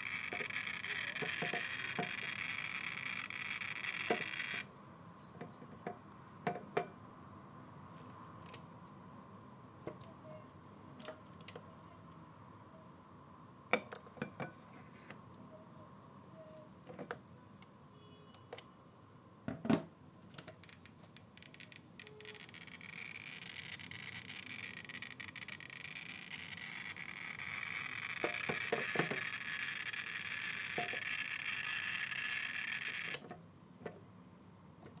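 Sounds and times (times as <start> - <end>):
dosimeter clicking: 0.0 - 4.7.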